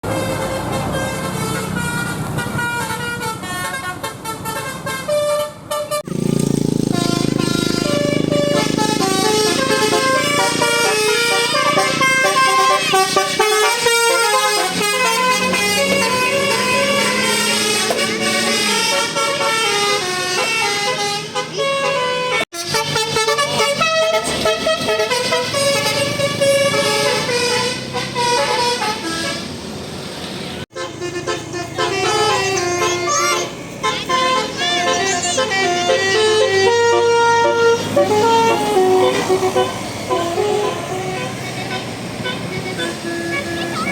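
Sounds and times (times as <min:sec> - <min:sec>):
musical air horn melody: 0:00.0 - 0:06.1, 0:06.9 - 0:29.5, 0:30.7 - 0:43.9
bus engine rumble: 0:00.0 - 0:43.9
low engine rumble: 0:06.0 - 0:19.9.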